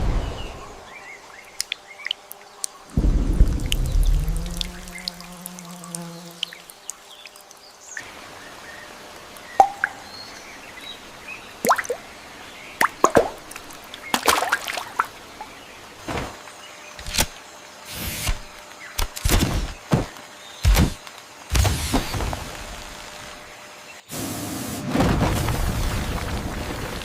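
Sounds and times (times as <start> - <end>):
faint steady hiss: 0.0 - 16.6
water plops and drips: 1.5 - 7.6, 9.4 - 10.1, 11.6 - 12.0, 12.8 - 15.5.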